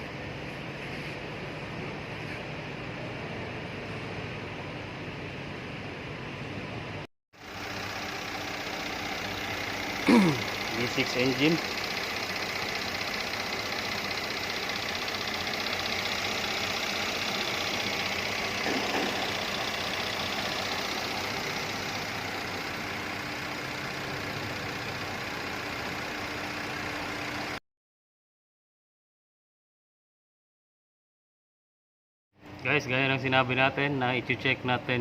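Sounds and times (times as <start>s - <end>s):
car engine idling: 7.4s - 27.6s.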